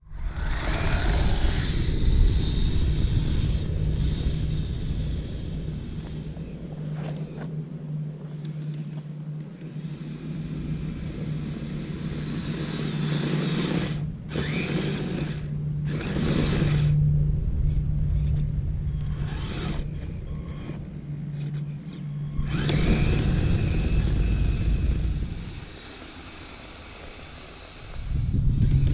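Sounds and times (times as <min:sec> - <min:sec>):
rising motor whine: 0:00.0 - 0:28.9
toy vehicle churning through snow: 0:00.2 - 0:07.4, 0:09.6 - 0:17.0, 0:19.1 - 0:20.8, 0:22.4 - 0:28.9.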